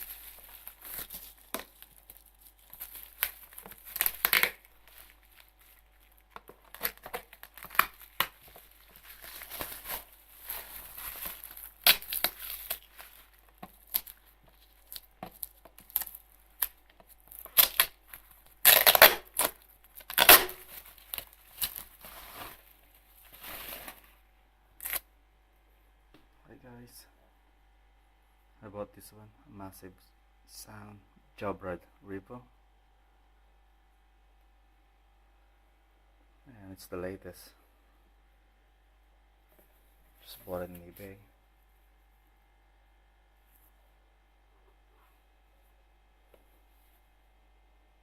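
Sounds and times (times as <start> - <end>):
packaging tearing and crinkling: 0.0 - 24.1, 24.8 - 25.0.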